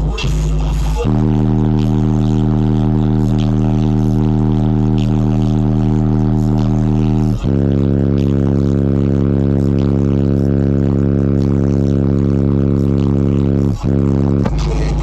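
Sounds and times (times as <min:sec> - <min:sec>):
car subwoofers playing bass drone: 0:00.0 - 0:15.0.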